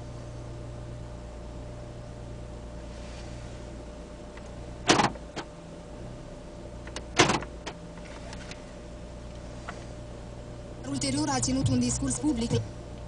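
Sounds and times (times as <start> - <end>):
car engine idling: 0.0 - 13.0
sharp clunk: 4.9 - 5.5.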